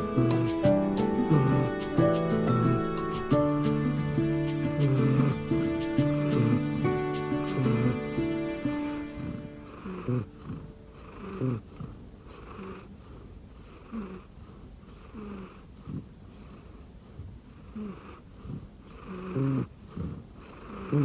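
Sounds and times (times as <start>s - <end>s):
cat snoring: 0.0s - 3.1s, 4.8s - 6.8s, 7.5s - 8.0s, 9.1s - 21.0s
short pitched snorts: 6.4s - 6.6s, 9.2s - 21.0s.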